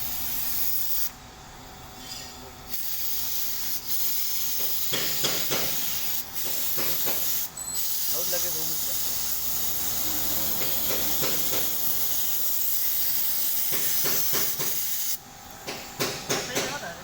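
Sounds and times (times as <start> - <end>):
compressed air hissing: 2.0 - 16.2.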